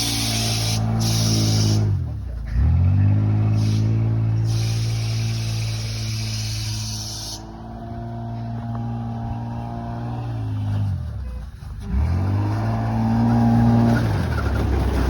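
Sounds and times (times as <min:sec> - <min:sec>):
car engine revving while driving: 0:00.0 - 0:11.1, 0:11.8 - 0:15.0
high hiss: 0:03.6 - 0:07.4.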